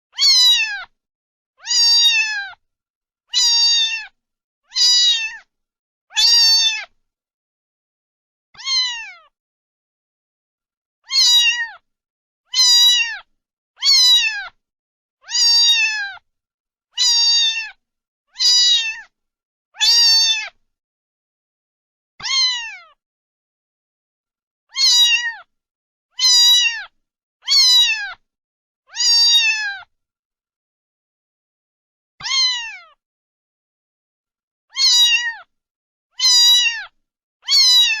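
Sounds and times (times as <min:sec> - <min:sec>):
cat meowing: 0:00.1 - 0:01.0, 0:01.6 - 0:02.6, 0:03.3 - 0:05.5, 0:06.1 - 0:07.0, 0:08.6 - 0:09.4, 0:11.0 - 0:11.8, 0:12.5 - 0:14.6, 0:15.2 - 0:16.2, 0:17.0 - 0:19.1, 0:19.8 - 0:20.6, 0:22.2 - 0:23.0, 0:24.7 - 0:25.5, 0:26.2 - 0:28.2, 0:28.9 - 0:29.9, 0:32.2 - 0:33.0, 0:34.7 - 0:35.5, 0:36.2 - 0:38.0.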